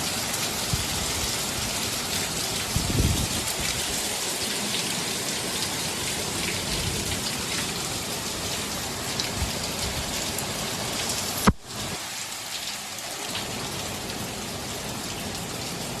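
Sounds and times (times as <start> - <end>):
heavy rain falling: 0.0 - 16.0
sharp click: 11.4 - 11.6.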